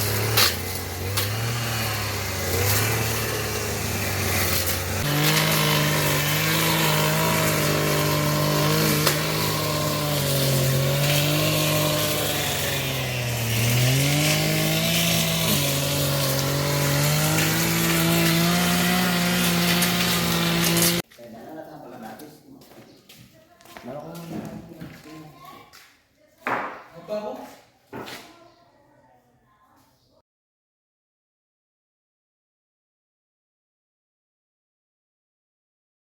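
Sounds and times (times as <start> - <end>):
small power-tool engine revving: 0.0 - 21.0.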